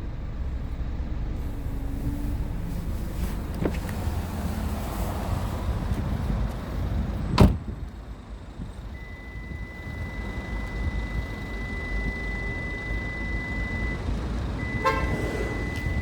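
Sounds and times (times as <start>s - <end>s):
car rumbling: 0.0s - 16.0s
car door shutting: 3.3s - 4.2s, 7.3s - 7.8s
steady high beep: 9.0s - 14.0s.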